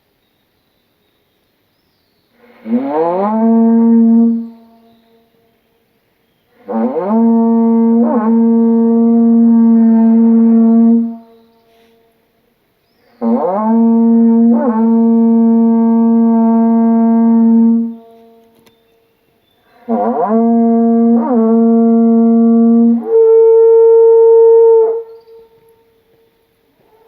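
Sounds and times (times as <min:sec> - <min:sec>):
conch-shell trumpet blasts: 0:02.4 - 0:04.6, 0:06.6 - 0:11.2, 0:13.2 - 0:18.4, 0:19.7 - 0:25.4.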